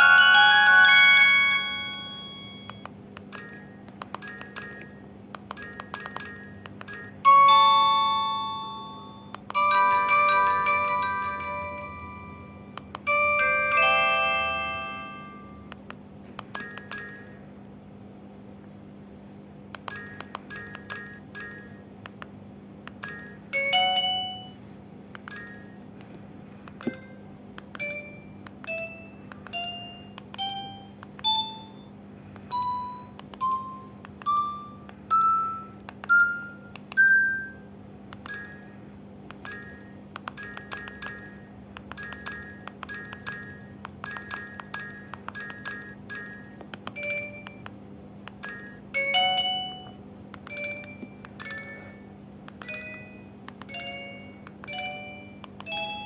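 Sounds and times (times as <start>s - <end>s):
two-note phone chime: 0.0s - 2.8s, 7.3s - 15.7s.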